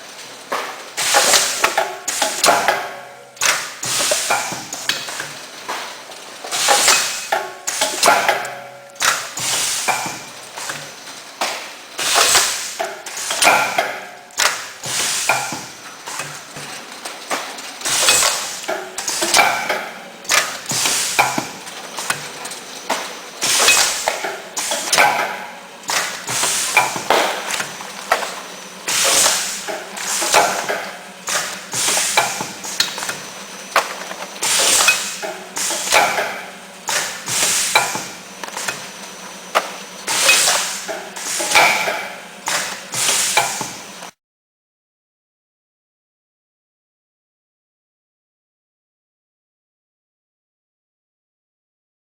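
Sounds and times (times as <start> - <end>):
packaging machine clattering: 0.0 - 44.1.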